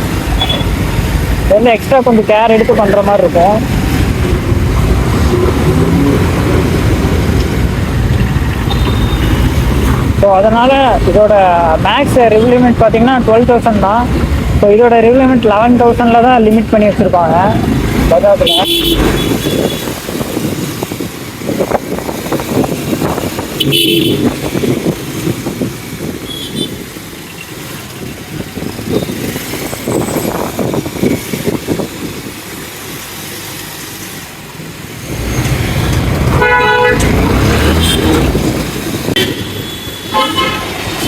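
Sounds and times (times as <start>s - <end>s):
traffic engine noise: 0.0s - 41.0s
vehicle horns honking: 0.3s - 0.8s, 8.6s - 9.6s, 18.4s - 20.0s, 23.6s - 24.7s, 26.3s - 26.8s, 36.3s - 38.4s, 39.1s - 41.0s.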